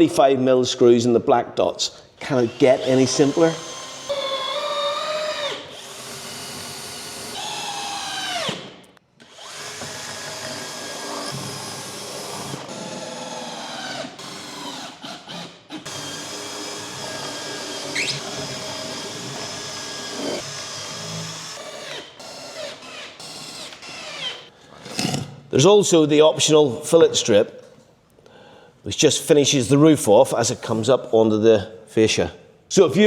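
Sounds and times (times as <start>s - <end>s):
power drill driving screws: 2.3s - 24.5s.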